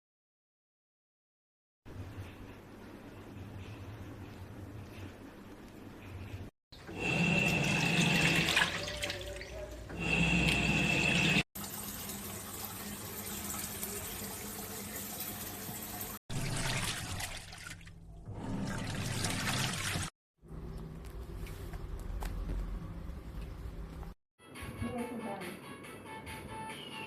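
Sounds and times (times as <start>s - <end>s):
washing machine running: 6.8s - 24.2s
water splashing in a tub: 7.7s - 10.6s, 16.1s - 20.1s.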